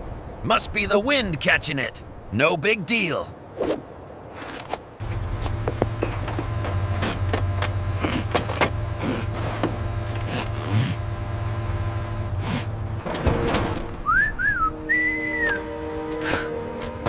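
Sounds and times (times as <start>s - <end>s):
low mechanical hum: 5.0s - 17.0s.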